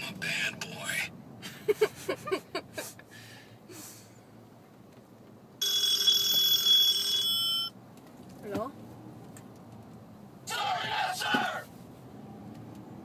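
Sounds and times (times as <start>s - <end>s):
electronic telephone ring: 5.6s - 7.8s.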